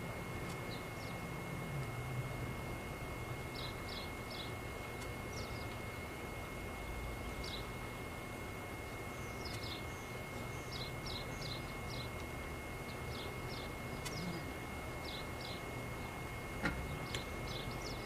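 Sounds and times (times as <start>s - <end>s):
low outdoor rumble and hiss: 0.0s - 18.0s
small bird chirping: 0.6s - 1.3s, 3.5s - 5.8s, 7.2s - 7.7s, 9.1s - 12.2s, 12.8s - 16.2s, 16.8s - 18.0s.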